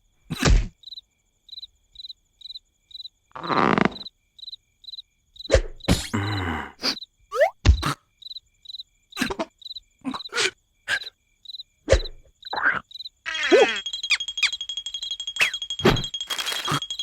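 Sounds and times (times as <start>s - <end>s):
cartoon cricket chirping: 0.3s - 17.0s
wavering cartoon vocal sound: 12.5s - 13.9s
rising cartoon squeak: 13.3s - 14.6s
steady high tone: 13.3s - 17.0s.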